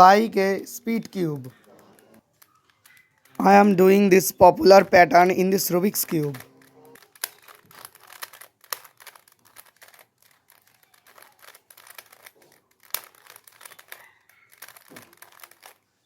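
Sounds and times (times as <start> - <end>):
puzzle cube clicking and snapping: 5.3 - 16.0.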